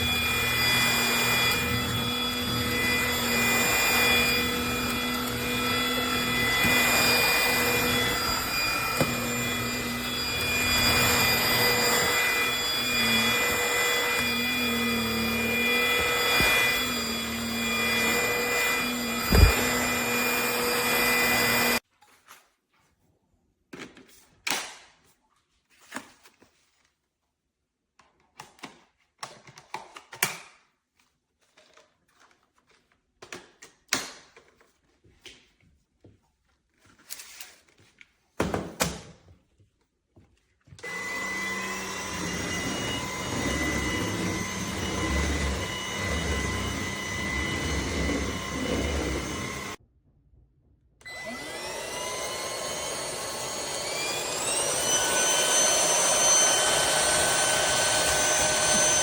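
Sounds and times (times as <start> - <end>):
vacuum motor high whine: 0.0 - 21.8, 40.8 - 49.8, 51.0 - 59.0.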